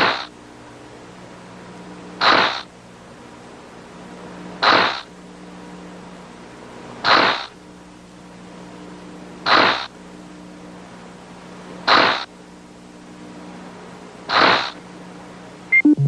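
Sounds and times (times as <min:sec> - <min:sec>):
low synth drone: 0:15.7 - 0:16.0.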